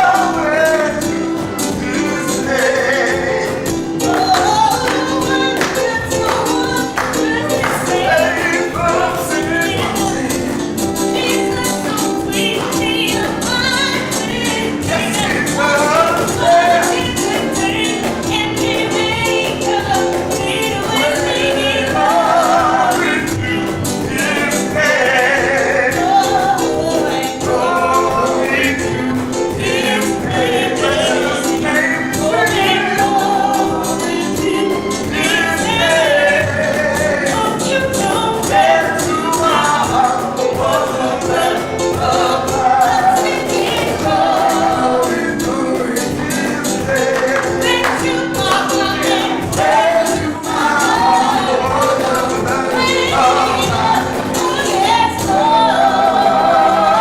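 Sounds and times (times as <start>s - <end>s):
gospel worship singing: 0.0s - 57.0s.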